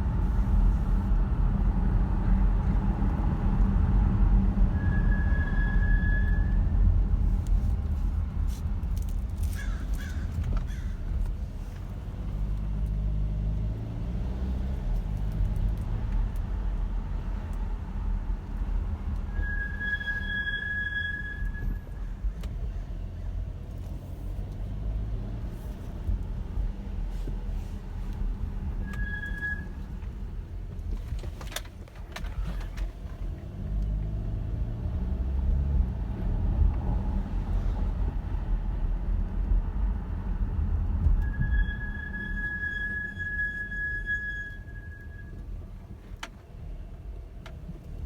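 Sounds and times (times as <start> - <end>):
car rumbling on road: 0.0 - 48.0
car brakes squealing: 4.6 - 6.8, 9.4 - 11.9, 18.8 - 22.8, 25.2 - 33.2, 41.0 - 46.0.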